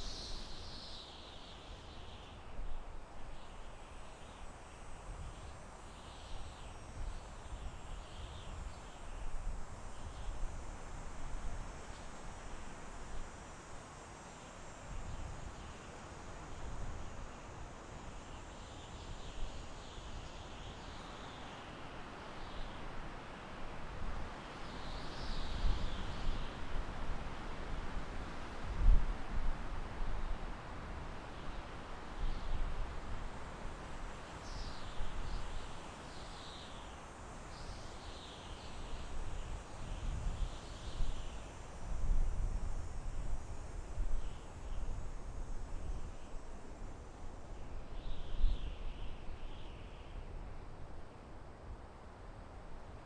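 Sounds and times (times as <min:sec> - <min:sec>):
wind rustling tree leaves: 0:00.0 - 0:53.0
wind rumbling on microphone: 0:23.8 - 0:35.9, 0:38.6 - 0:51.6.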